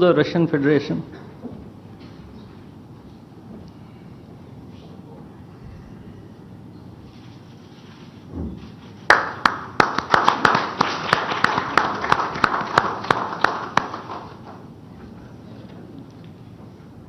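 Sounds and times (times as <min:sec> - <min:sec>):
audience applause: 0:09.1 - 0:14.7.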